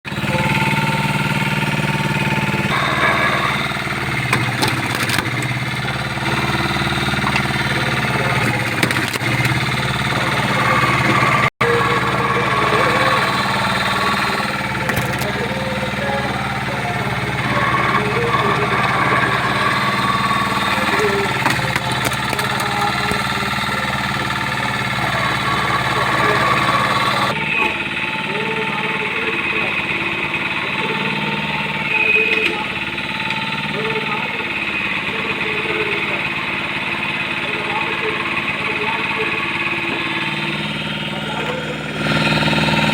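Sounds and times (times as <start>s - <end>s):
wood-cutting machine hum: 0.0s - 42.9s
sharp clicks and knocks: 2.7s - 11.5s, 12.1s - 25.5s.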